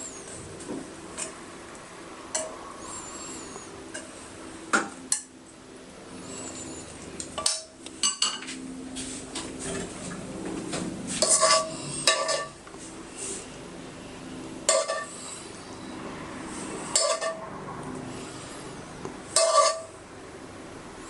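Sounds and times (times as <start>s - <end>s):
faint steady hum: 0.0s - 21.0s
utensils clinking against dishes: 6.2s - 8.6s, 11.1s - 12.6s, 14.7s - 15.4s, 16.8s - 17.4s, 19.3s - 20.0s.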